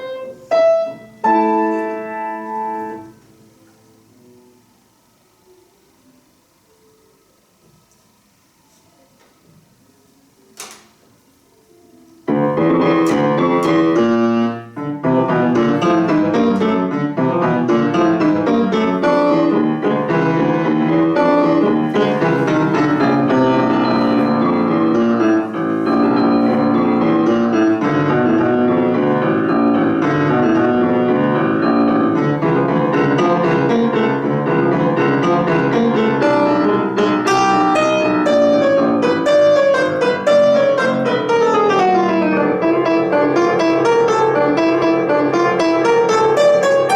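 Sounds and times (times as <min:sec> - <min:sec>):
solo piano classical piece: 0:00.0 - 0:04.8, 0:09.0 - 0:46.9.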